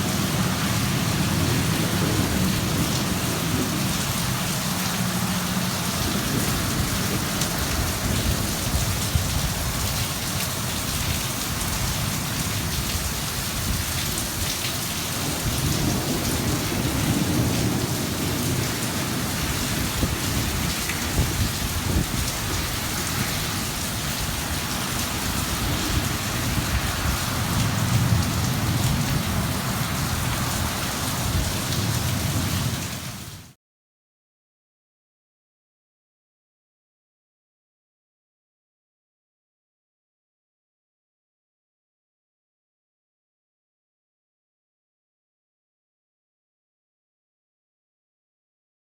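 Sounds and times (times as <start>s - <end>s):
heavy rain falling: 0.0s - 33.6s
thunder rumbling: 0.1s - 4.7s, 15.2s - 32.7s.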